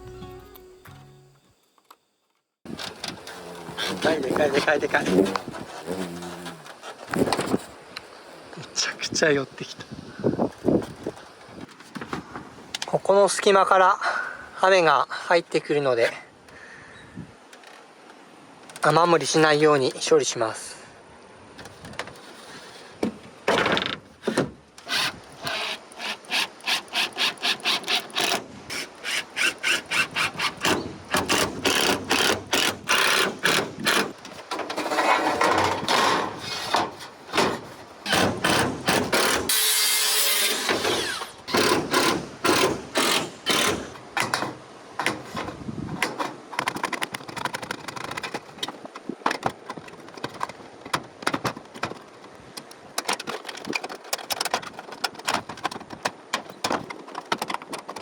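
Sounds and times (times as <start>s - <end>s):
scraping and rubbing on wood: 2.7s - 7.7s, 21.6s - 58.0s.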